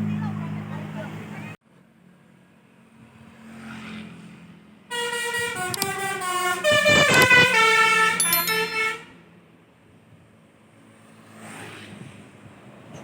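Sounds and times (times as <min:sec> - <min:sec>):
multi-tone bus horn tune: 0:04.9 - 0:09.0.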